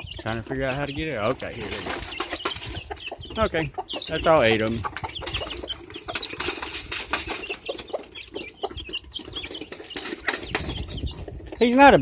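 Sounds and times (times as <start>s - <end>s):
hen clucking softly: 0.0s - 6.4s
chicks peeping: 0.0s - 12.0s.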